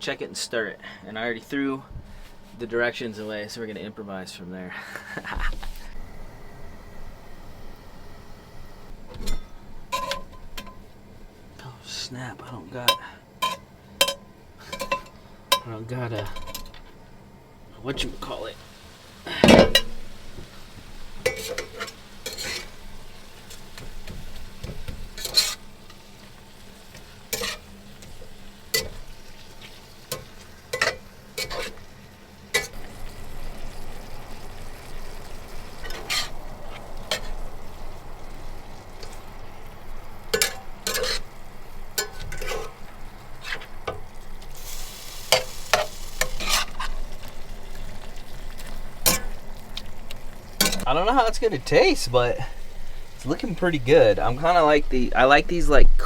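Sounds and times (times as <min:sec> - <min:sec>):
noodles sizzling: 0:00.0 - 0:56.0
utensil scraping in pan: 0:09.0 - 0:11.5, 0:12.8 - 0:17.0, 0:17.9 - 0:55.8.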